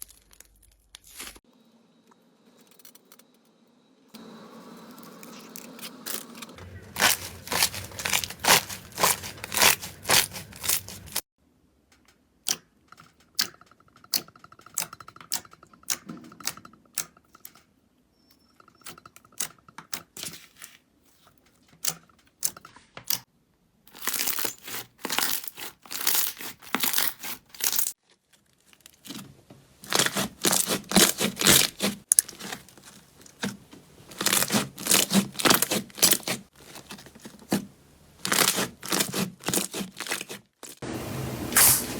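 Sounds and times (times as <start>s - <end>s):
slime crackling and popping: 5.2s - 11.2s, 24.0s - 27.9s, 34.1s - 37.6s, 38.2s - 40.8s.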